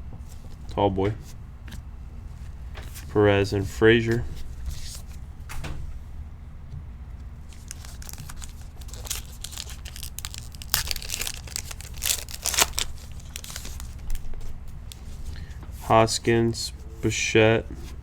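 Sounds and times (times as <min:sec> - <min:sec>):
plastic wrapper tearing and crinkling: 0:07.5 - 0:14.3.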